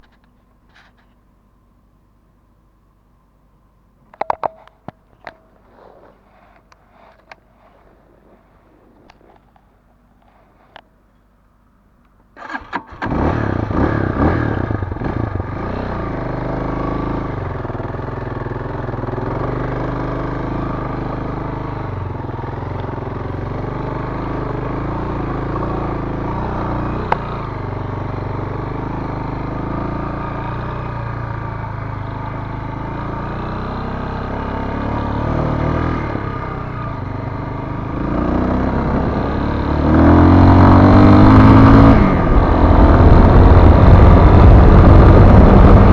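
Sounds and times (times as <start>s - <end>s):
motorcycle engine at speed: 12.4s - 45.9s.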